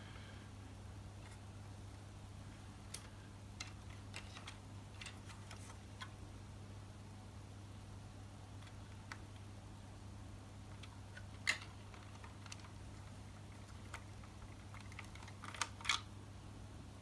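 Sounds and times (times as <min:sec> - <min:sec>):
low steady hum: 0:00.0 - 0:17.0
plastic bricks clicking and tapping: 0:13.6 - 0:16.1.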